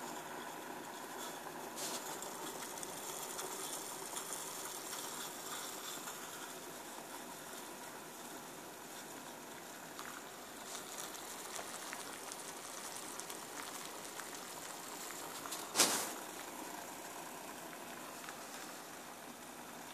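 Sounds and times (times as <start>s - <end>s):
blowtorch hissing: 1.7s - 3.0s, 15.4s - 16.3s.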